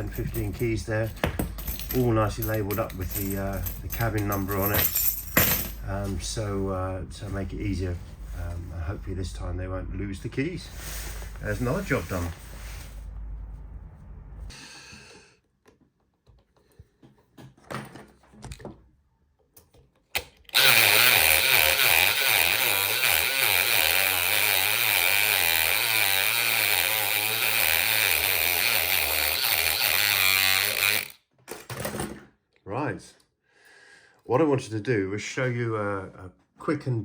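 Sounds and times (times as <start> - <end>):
power tool running: 20.5 - 31.2.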